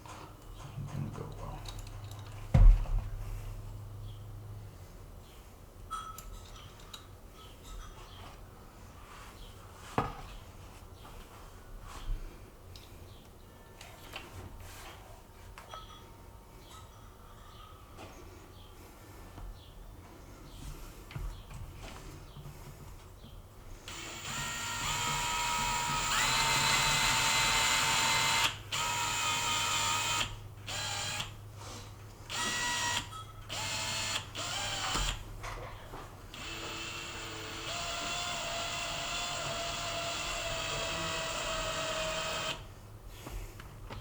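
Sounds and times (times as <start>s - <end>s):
power drill motor whine: 23.9s - 31.4s, 32.3s - 35.2s, 36.3s - 42.7s.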